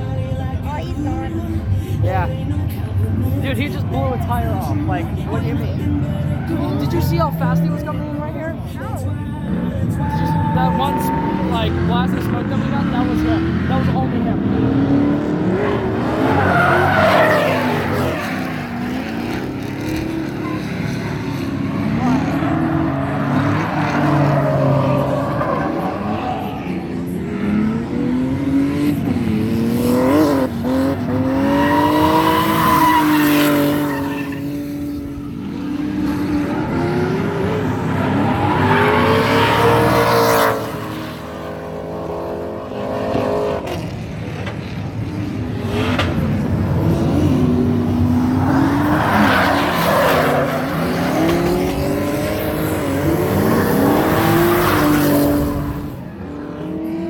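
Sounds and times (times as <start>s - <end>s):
car engines revving: 0.0s - 57.0s
tyres screeching: 31.1s - 35.2s.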